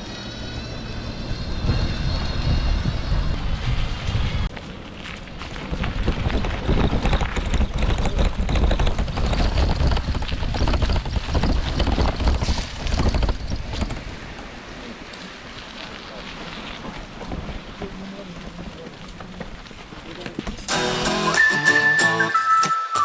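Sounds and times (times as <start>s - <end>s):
wind buffeting microphone: 0.1s - 20.6s
bicycle clatter and rattling: 4.6s - 20.7s.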